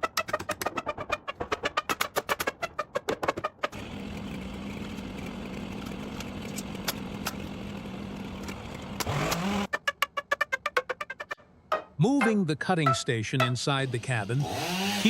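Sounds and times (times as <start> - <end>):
rhythmic clicking music: 0.0 - 3.7, 9.7 - 13.7
chainsaw engine revving: 3.8 - 9.7, 14.3 - 15.0.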